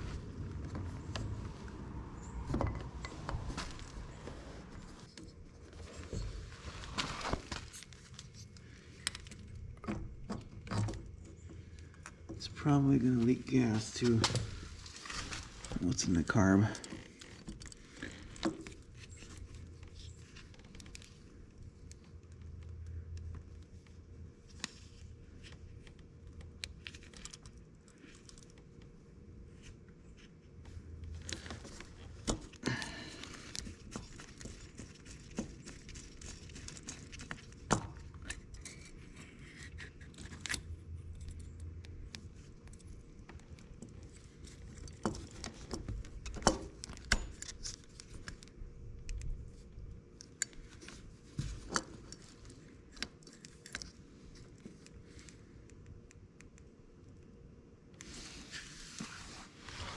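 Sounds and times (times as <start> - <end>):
rustling: 0.0 - 9.6, 13.0 - 21.4, 58.0 - 59.9.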